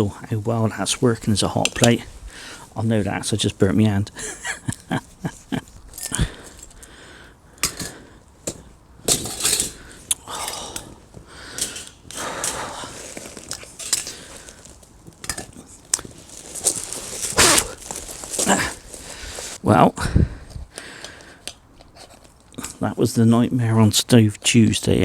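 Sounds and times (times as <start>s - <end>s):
handling noise: 7.6s - 19.6s
metal cooking gear clinking: 11.6s - 15.5s.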